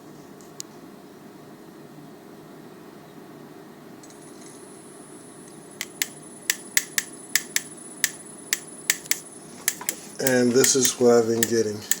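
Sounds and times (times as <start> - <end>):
thin high motor whine: 4.1 - 12.0
sharp irregular clicks: 5.8 - 12.0.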